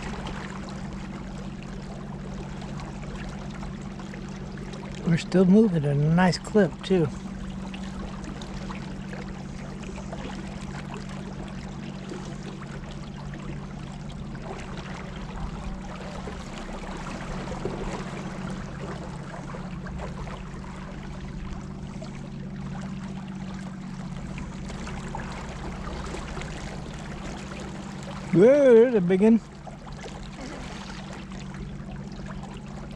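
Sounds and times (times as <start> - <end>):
constant low hum: 0.0 - 32.9
river water rushing: 30.2 - 31.4.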